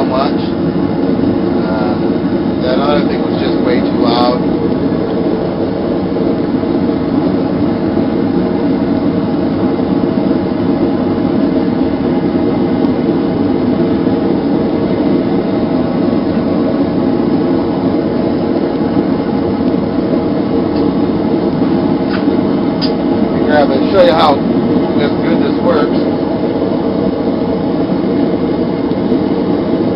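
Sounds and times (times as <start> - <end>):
gas forge burner rushing: 0.0 - 29.9.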